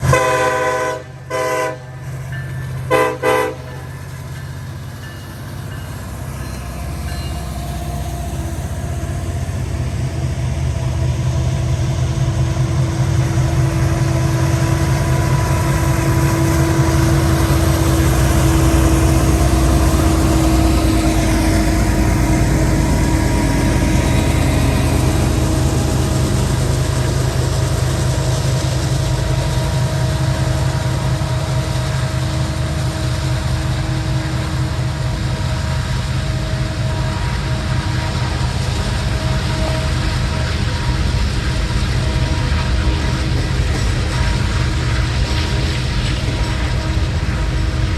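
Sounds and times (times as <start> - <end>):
train horn blasts: 0.0 - 2.2, 2.8 - 4.0, 28.9 - 47.9
locomotive diesel engine: 0.0 - 47.9
rumble of train cars: 0.0 - 47.9.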